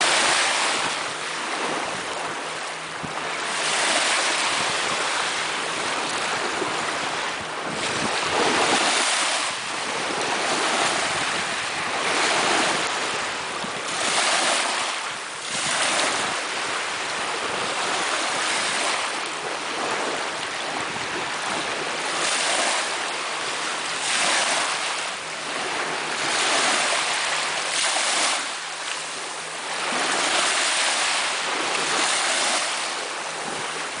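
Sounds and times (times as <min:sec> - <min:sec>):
sea waves washing ashore: 0:00.0 - 0:34.0.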